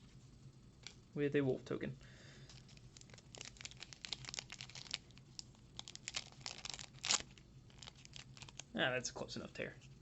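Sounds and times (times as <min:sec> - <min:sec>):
plastic wrapper crinkling: 0:02.5 - 0:08.8
wrapper tearing open: 0:02.6 - 0:08.7.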